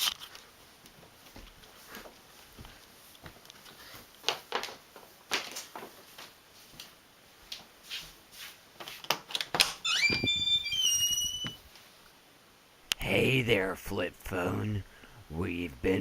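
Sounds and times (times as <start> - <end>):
soft shuffling footsteps: 0.0 - 9.1
door creaking open: 9.3 - 11.6.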